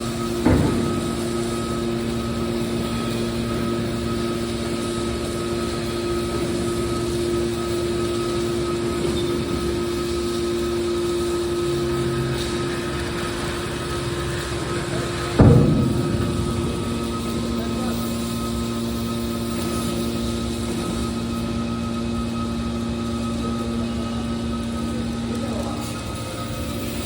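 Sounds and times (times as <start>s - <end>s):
machine humming with held tones: 0.0s - 27.0s.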